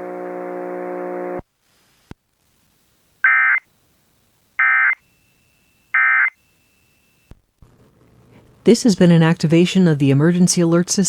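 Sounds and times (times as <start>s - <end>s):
buzzing hum: 0.0s - 1.5s.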